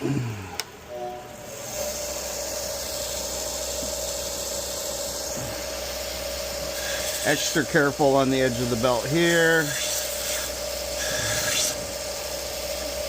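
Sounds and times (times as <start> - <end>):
belt sharpener motor hum: 1.4 - 13.0.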